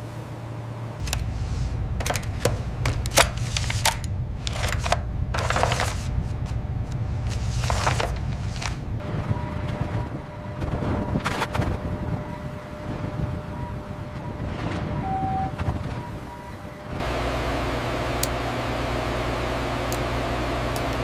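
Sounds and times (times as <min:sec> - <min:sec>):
steady low rumble: 0:00.6 - 0:21.0.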